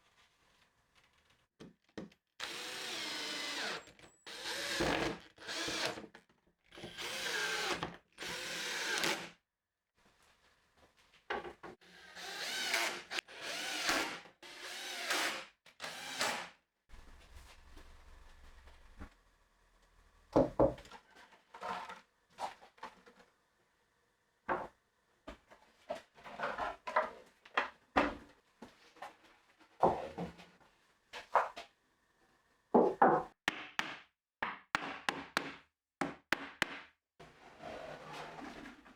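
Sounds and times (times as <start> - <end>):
power drill running: 2.4 - 5.9, 6.8 - 9.2, 12.0 - 16.3.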